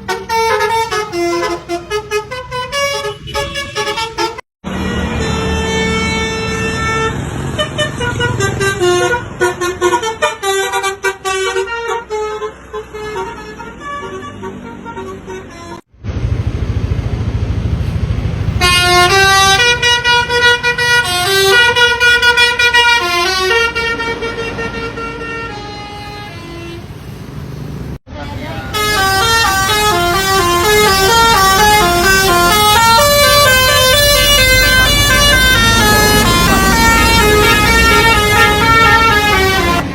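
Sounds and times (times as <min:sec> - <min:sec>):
musical air horn melody: 0:00.0 - 0:15.9, 0:18.6 - 0:26.9, 0:28.7 - 0:39.9
low engine rumble: 0:15.9 - 0:39.9.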